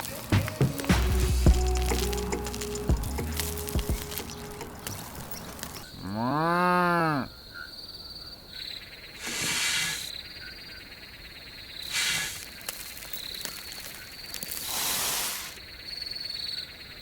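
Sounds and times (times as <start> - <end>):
cow mooing: 4.1 - 7.3
short bursts of hiss: 9.2 - 10.2, 11.8 - 13.0, 14.4 - 15.6.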